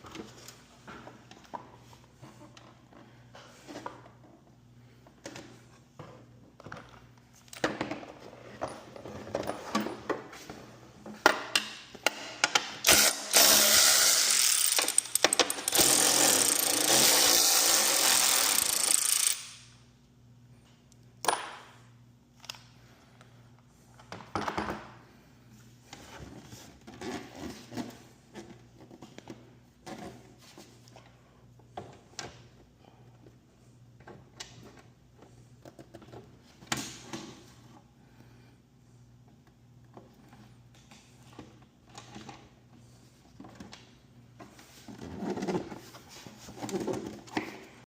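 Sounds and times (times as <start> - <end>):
handheld power tool running: 12.8 - 19.6.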